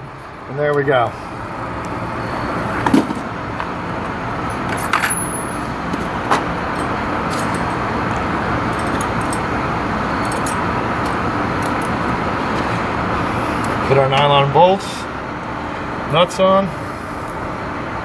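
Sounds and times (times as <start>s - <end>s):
steady background noise: 0.0s - 18.0s
metal hardware clinking: 4.5s - 5.6s, 8.7s - 9.5s, 10.2s - 12.0s.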